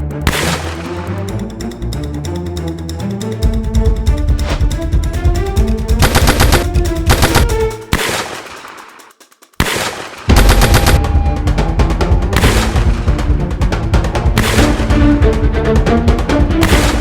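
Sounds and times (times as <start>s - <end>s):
dramatic film music: 0.0s - 17.0s
rapid automatic gunfire: 6.0s - 9.0s, 9.6s - 11.0s.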